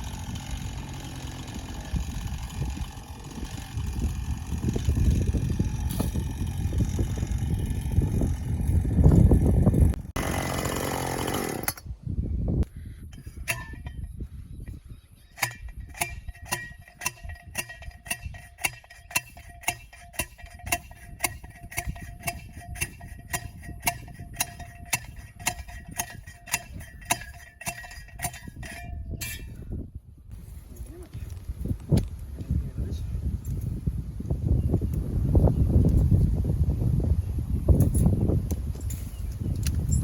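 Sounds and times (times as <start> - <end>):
metal ratchet clicking: 15.4 - 29.6.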